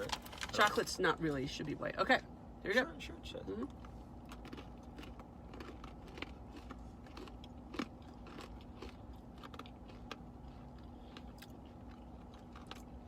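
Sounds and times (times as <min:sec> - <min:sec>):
crunching and chewing pretzels: 0:03.6 - 0:13.0.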